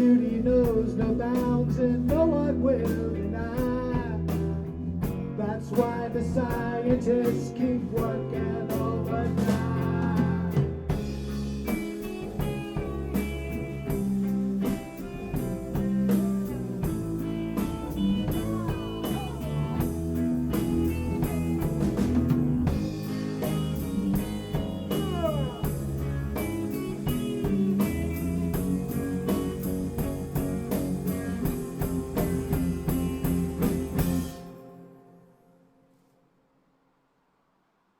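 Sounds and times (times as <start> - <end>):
steady drum beat: 0.0 - 34.5
rock band playing: 0.0 - 35.0
guitar lead with sliding notes: 10.2 - 35.3.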